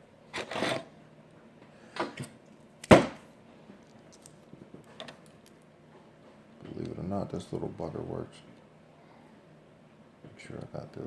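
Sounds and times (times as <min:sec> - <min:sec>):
sharp knock: 0:02.9 - 0:03.2.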